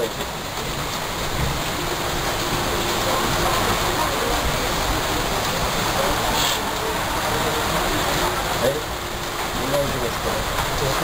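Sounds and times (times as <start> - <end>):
steady rushing hiss: 0.0 - 11.0
brief higher hiss: 6.4 - 6.6.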